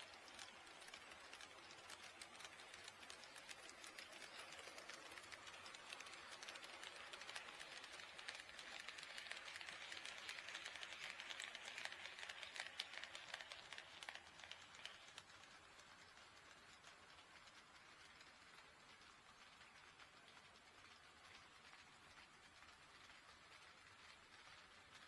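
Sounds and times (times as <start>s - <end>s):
model train wheels clicking: 0.0s - 25.0s.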